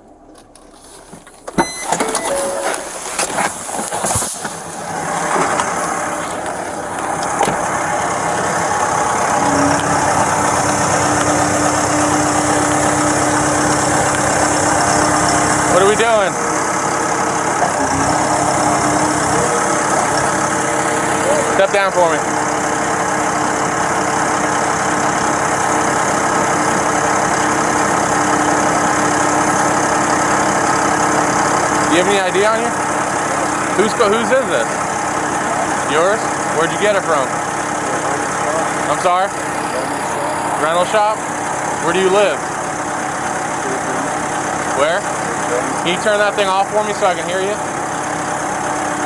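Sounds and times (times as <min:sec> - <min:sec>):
steady hum: 0:00.0 - 0:24.7, 0:31.9 - 0:46.4
construction machine engine running: 0:00.0 - 0:49.0.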